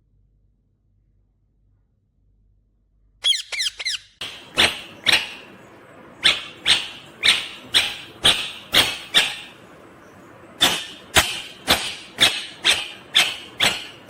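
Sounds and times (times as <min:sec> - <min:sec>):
parakeet calling: 0:03.2 - 0:14.0.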